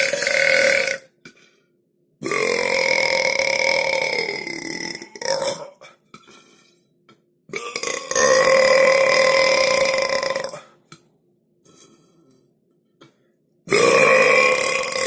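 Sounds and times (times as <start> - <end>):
person burping: 0.0 - 1.3, 2.2 - 6.0, 7.5 - 10.8, 13.7 - 15.0.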